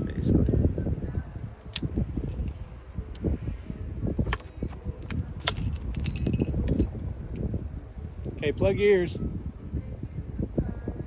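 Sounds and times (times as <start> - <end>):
wind noise on microphone: 0.0 - 11.0
handling rumble: 2.3 - 8.4.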